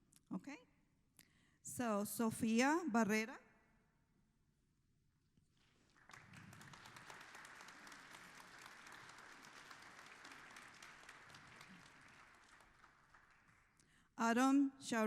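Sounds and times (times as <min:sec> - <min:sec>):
congregation applauding: 0:05.6 - 0:14.0.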